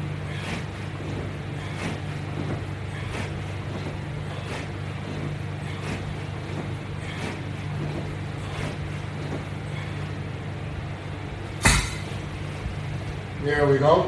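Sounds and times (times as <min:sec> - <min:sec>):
steady low hum: 0:10.9 - 0:13.4.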